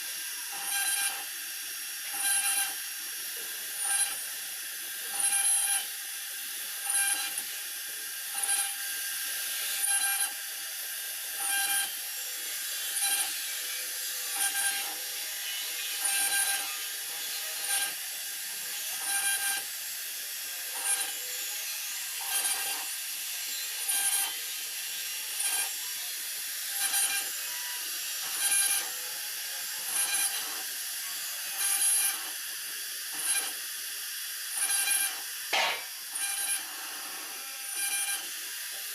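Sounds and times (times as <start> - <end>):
router spindle cutting board: 0.0 - 38.9.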